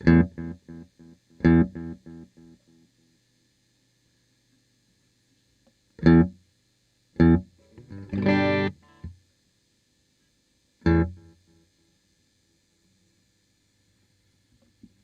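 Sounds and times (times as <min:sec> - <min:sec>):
faint low hum: 0:00.0 - 0:15.0
electric guitar chord stabs: 0:07.2 - 0:08.9.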